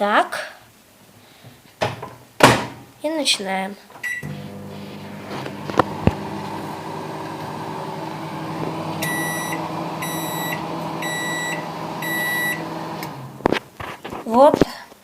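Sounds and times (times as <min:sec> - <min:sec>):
high microwave beeps: 0:04.0 - 0:04.4, 0:09.0 - 0:13.0
microwave oven humming: 0:04.2 - 0:13.6.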